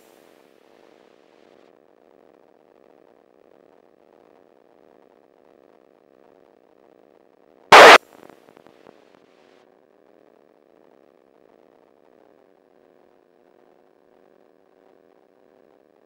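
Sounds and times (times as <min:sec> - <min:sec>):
loud radio squelch burst: 0:07.7 - 0:08.0.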